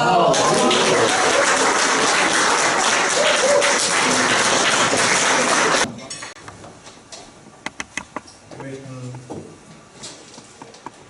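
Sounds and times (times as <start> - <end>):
people applauding: 0.1 - 5.9.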